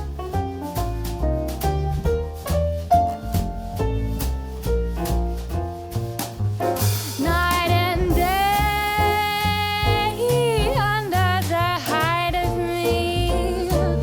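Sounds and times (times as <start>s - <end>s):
jazz piano bass and drums: 0.0s - 14.0s
woman scat singing: 7.2s - 14.0s.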